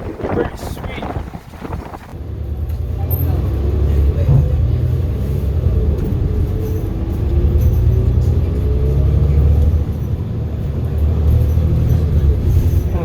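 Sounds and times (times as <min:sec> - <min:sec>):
wind buffeting microphone: 0:00.0 - 0:06.2
road traffic: 0:00.0 - 0:13.0
engine with rising tone: 0:01.6 - 0:13.0.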